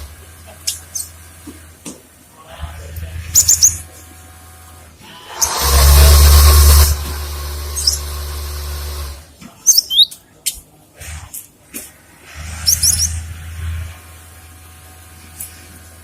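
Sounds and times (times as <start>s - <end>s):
bird chirping: 9.7s - 10.6s, 12.6s - 13.2s.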